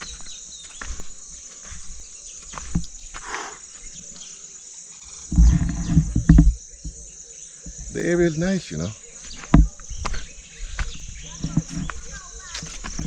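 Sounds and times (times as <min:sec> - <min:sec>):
crickets chirring: 0:00.0 - 0:13.0
low rumble on microphone: 0:05.3 - 0:06.6
rustles and clicks: 0:11.2 - 0:13.0.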